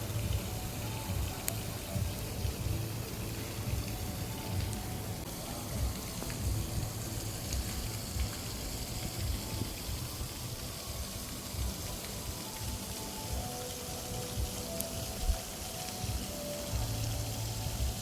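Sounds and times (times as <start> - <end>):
rushing hiss of surf or rain: 0.0 - 18.0.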